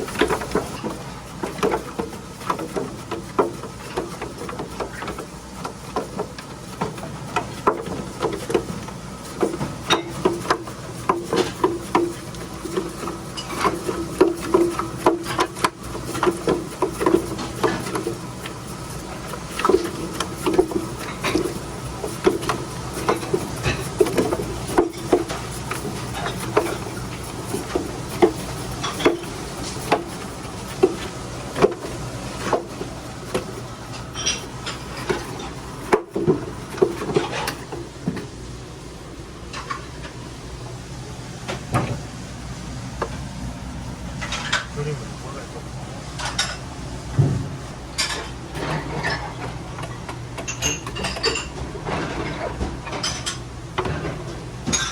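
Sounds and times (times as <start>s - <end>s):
knocks and clatter of cutting: 0.0s - 38.3s.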